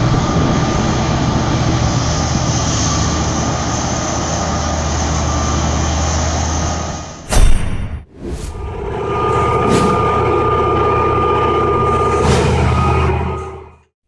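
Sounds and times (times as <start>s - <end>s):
diesel engine droning: 0.0s - 7.2s, 8.2s - 13.9s.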